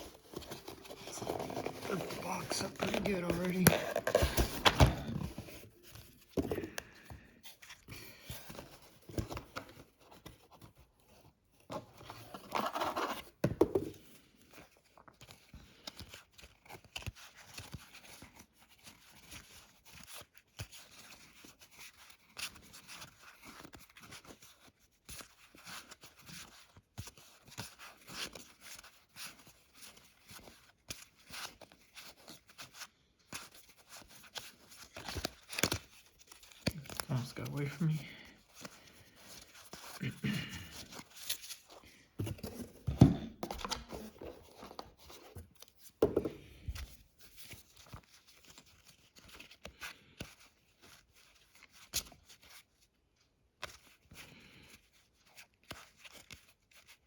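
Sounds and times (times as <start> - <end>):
cardboard and packaging rustling: 0.0 - 19.6, 25.3 - 49.6.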